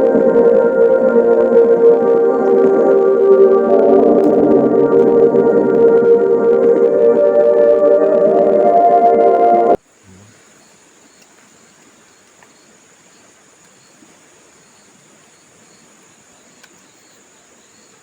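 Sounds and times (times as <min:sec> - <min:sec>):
faint outdoor hiss: 0:00.0 - 0:18.0
insects trilling: 0:09.8 - 0:18.0
faint ticks: 0:11.1 - 0:14.2, 0:15.2 - 0:17.2.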